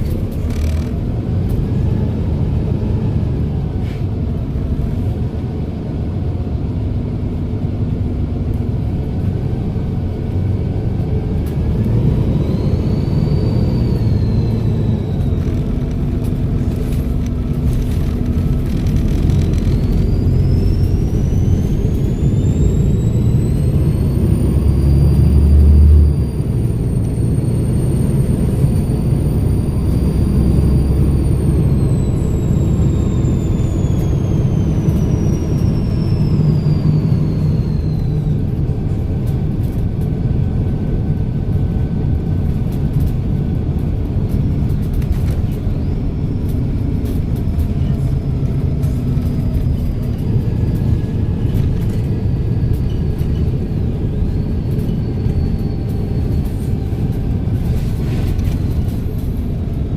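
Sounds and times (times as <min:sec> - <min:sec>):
bus diesel engine rumbling: 0:00.0 - 0:59.9
high turbocharger whistle: 0:12.1 - 0:15.7, 0:19.8 - 0:38.5.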